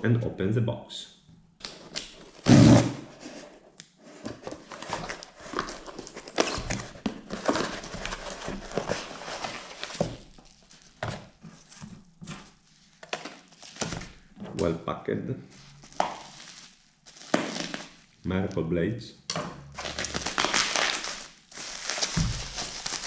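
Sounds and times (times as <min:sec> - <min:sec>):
package knocks scrapes and rustles: 0:01.7 - 0:14.2, 0:21.8 - 0:23.0.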